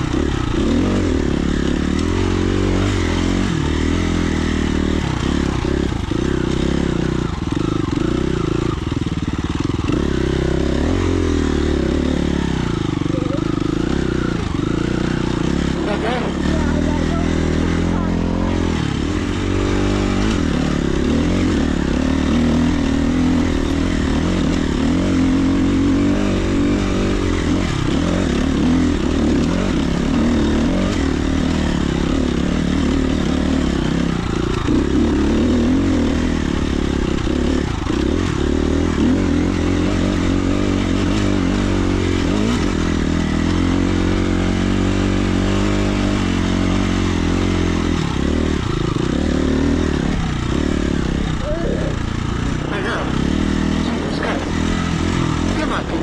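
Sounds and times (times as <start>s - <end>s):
dirt bike engine revving: 0.0s - 56.0s.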